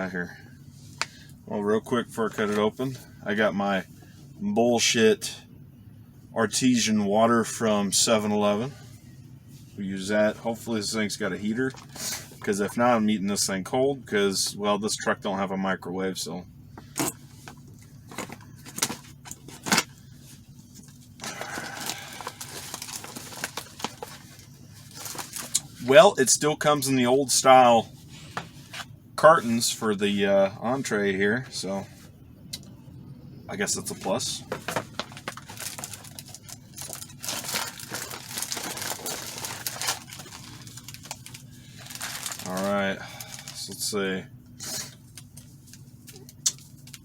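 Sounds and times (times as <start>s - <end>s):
faint low hum: 0.0s - 47.0s
plastic packaging crinkling: 17.0s - 26.0s, 34.5s - 43.8s.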